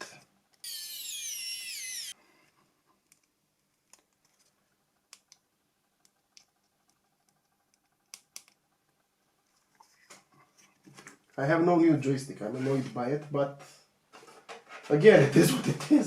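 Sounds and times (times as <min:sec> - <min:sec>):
high whir falling in pitch: 0:00.6 - 0:02.1.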